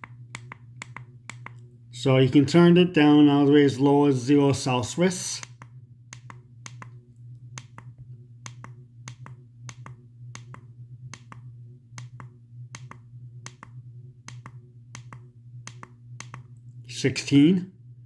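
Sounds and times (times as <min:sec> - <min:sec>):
thermostat buttons clicking: 0:00.0 - 0:01.6
low hum: 0:00.0 - 0:18.0.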